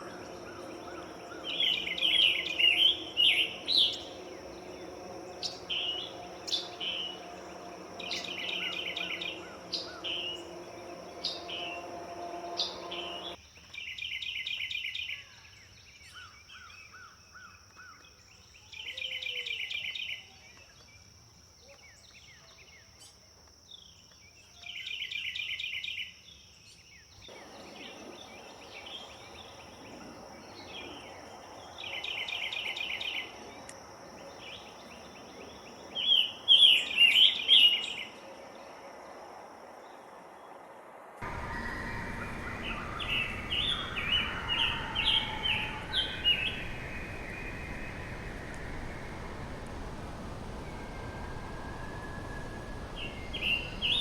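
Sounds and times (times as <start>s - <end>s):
songbird buzzy trilled phrases: 0.0s - 13.4s
songbird sharp chirps: 0.0s - 13.4s, 41.2s - 54.0s.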